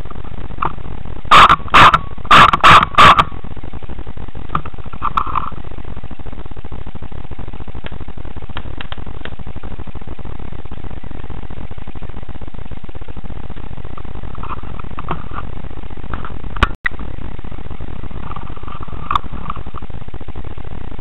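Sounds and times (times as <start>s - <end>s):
crackling microphone rumble: 0.0s - 21.0s
sharp clicks: 7.8s - 9.4s.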